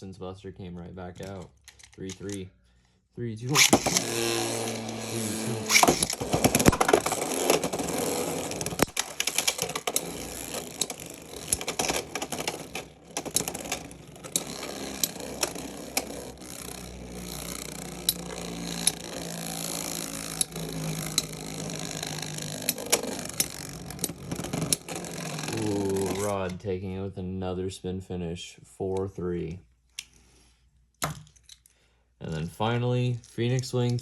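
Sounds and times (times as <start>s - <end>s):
spinning tops clacking: 3.5s - 26.4s
spinning tops whirring and scraping: 3.5s - 26.6s.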